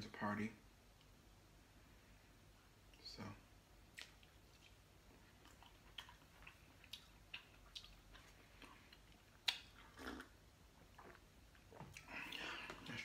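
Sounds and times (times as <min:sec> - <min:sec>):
person chewing: 0:03.9 - 0:13.0
wet mouth clicks: 0:09.4 - 0:10.3.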